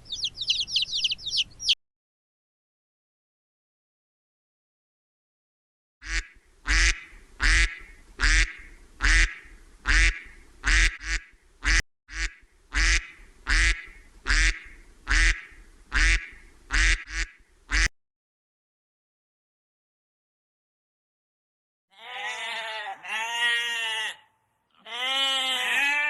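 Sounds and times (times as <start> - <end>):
duck quacking: 6.0 - 17.9.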